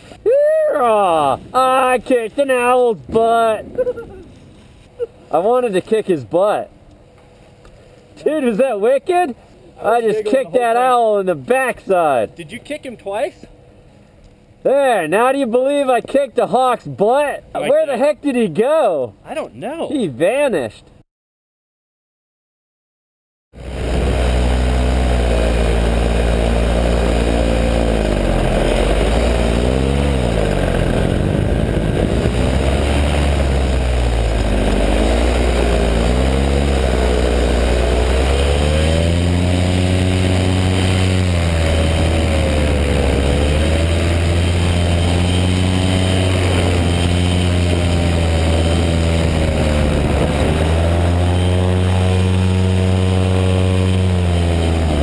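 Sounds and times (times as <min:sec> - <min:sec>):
paramotor engine and propeller: 0:23.6 - 0:55.0.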